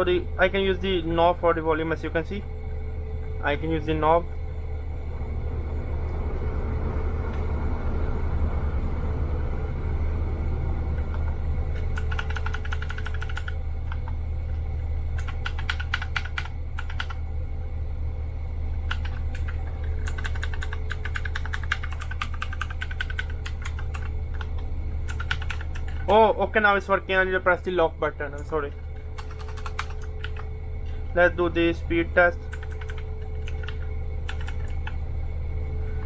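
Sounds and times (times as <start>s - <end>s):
steady low hum: 0.0s - 36.0s
mechanical keyboard typing clicks: 11.8s - 14.2s, 15.2s - 17.2s, 18.9s - 26.1s, 29.2s - 30.5s, 32.5s - 35.0s.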